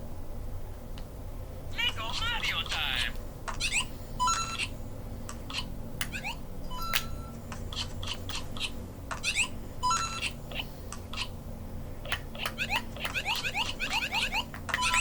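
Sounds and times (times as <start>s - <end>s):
electronic toy beeps and chirps: 3.5s - 4.8s, 5.5s - 11.4s, 12.1s - 15.0s.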